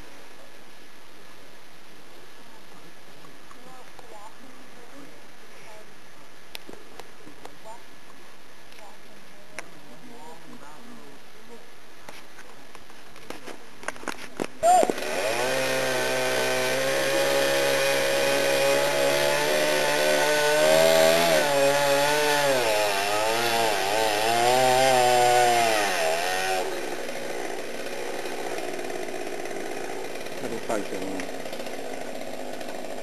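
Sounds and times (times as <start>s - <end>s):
chainsaw running at high revs: 14.6s - 33.0s.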